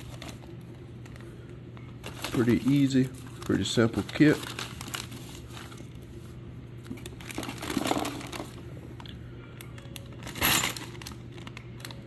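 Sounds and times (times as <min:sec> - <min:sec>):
steady low hum: 0:00.0 - 0:12.0
plastic packaging crinkling: 0:02.0 - 0:06.0, 0:10.0 - 0:12.0.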